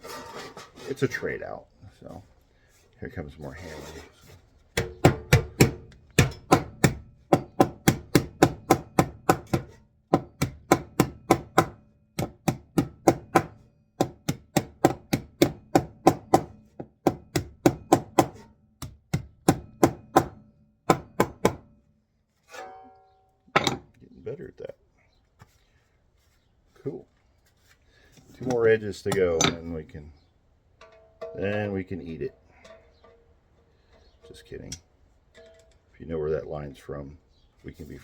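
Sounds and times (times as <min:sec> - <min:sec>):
hammer striking tin sheet: 0:04.8 - 0:18.5, 0:22.5 - 0:23.8.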